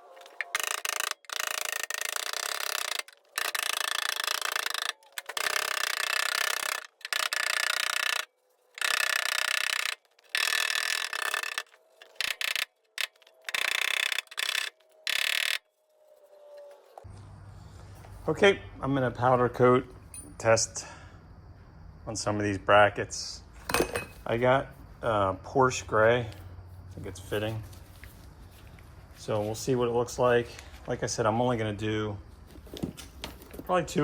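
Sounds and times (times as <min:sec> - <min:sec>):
power tool mechanical chatter: 0:00.0 - 0:15.6.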